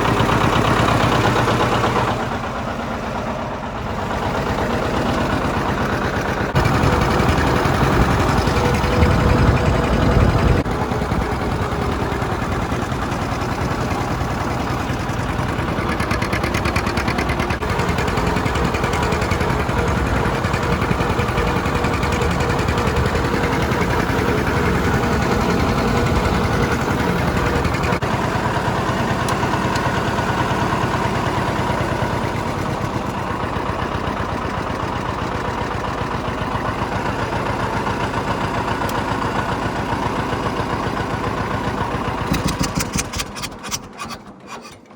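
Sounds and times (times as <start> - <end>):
tractor diesel engine running: 0.0 - 44.9.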